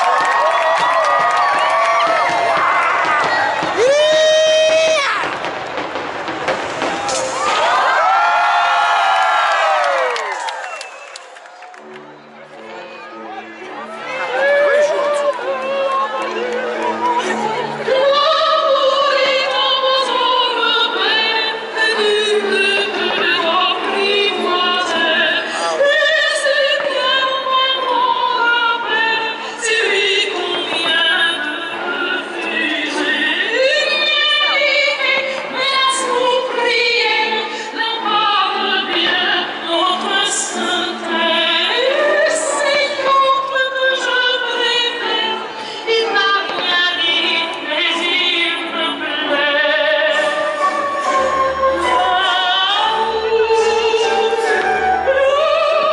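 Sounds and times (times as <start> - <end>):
operatic singing with accompaniment: 13.7 - 55.9.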